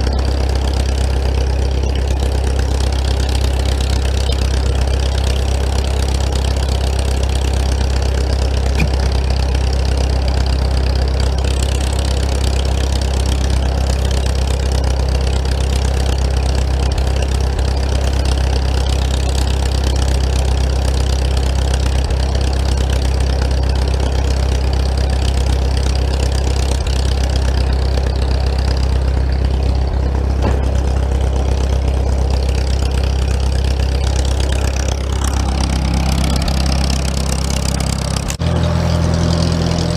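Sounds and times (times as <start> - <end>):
engine idling: 0.0 - 39.9.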